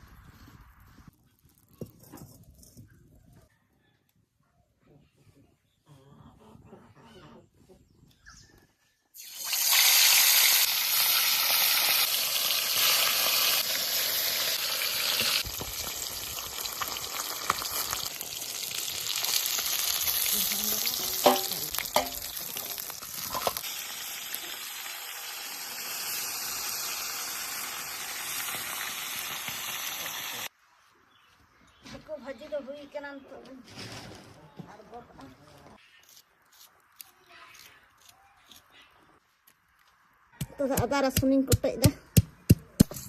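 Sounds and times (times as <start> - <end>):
pork sizzling in hot oil: 9.2 - 30.5.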